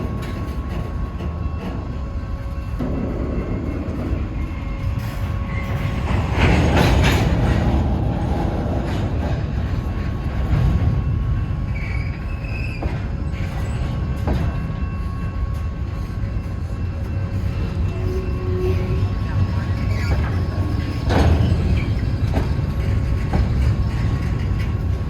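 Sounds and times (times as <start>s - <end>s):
freight cars rolling on rails: 0.0s - 25.0s
wheels clicking over rail joints: 5.0s - 14.7s, 17.9s - 25.0s
wheel squeal: 11.7s - 15.1s, 17.7s - 22.6s.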